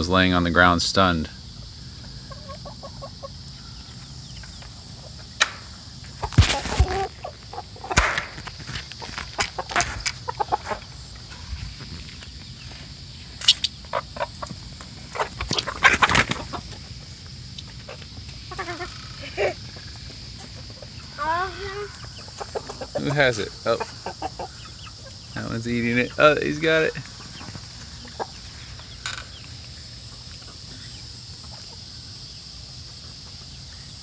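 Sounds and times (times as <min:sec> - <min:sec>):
chickens clucking: 0:00.0 - 0:34.0
high insect drone: 0:00.0 - 0:34.0
sharp clicks and knocks: 0:07.9 - 0:08.6.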